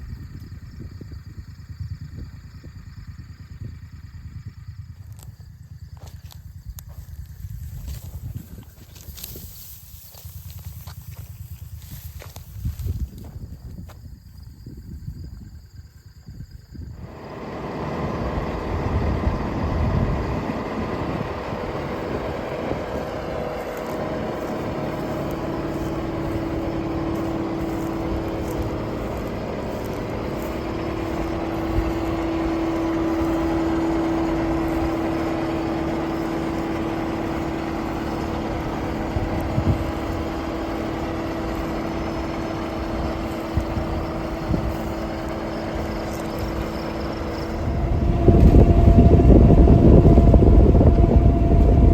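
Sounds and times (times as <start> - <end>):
heavy machinery running: 17.0 - 51.9
steady hum: 17.0 - 51.9.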